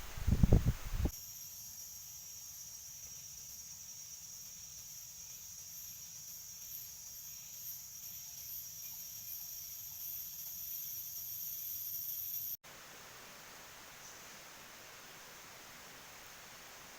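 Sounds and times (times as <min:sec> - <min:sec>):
night insects chirring: 0:00.0 - 0:16.9.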